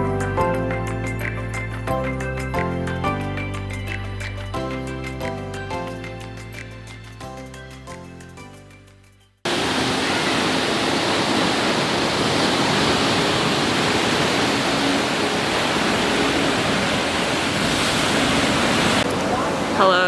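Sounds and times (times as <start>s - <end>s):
background music: 0.0s - 9.4s
sea waves breaking on rocks: 9.5s - 20.0s.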